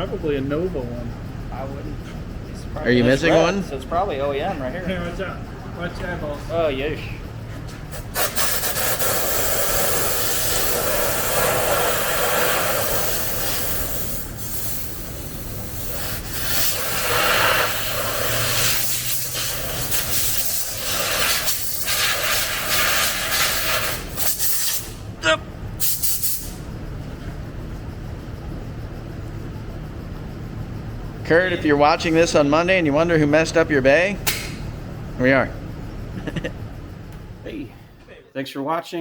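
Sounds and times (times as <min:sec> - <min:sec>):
compressed air blow gun hissing: 0:07.9 - 0:25.0, 0:25.8 - 0:26.6.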